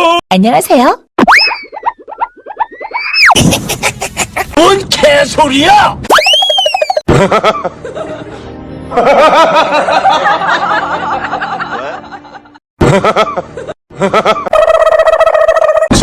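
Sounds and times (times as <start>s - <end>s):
running-away comedy effect: 1.2s - 4.4s, 6.1s - 7.0s
incredulous laugh: 3.3s - 4.6s, 7.1s - 15.9s.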